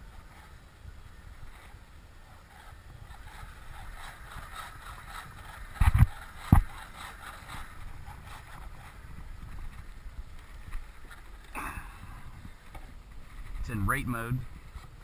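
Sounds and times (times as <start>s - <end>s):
wind rumbling on microphone: 0.0s - 15.0s
small servos whirring: 1.4s - 11.5s.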